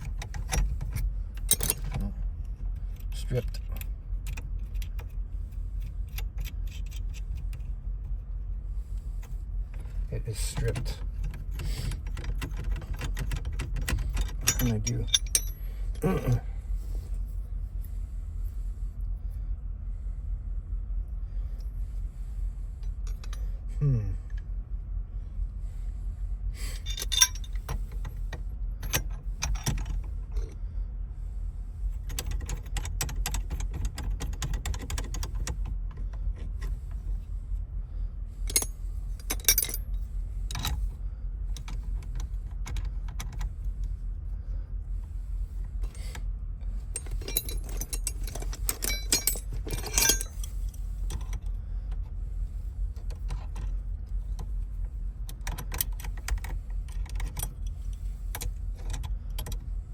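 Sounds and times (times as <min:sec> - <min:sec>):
small metal parts rattling: 0:00.0 - 0:02.1, 0:10.4 - 0:16.2, 0:26.8 - 0:28.0, 0:38.5 - 0:40.8, 0:46.8 - 0:51.4
steady low rumble: 0:00.0 - 0:59.9
metallic clicks: 0:47.0 - 0:51.4.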